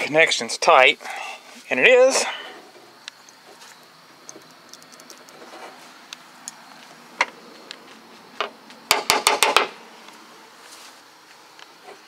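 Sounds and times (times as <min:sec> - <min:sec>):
sharp knocks: 0:08.4 - 0:09.8.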